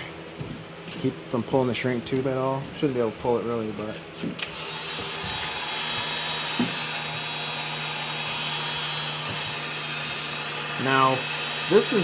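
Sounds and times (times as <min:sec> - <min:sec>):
heat gun fan blowing hiss: 0:04.4 - 0:12.0.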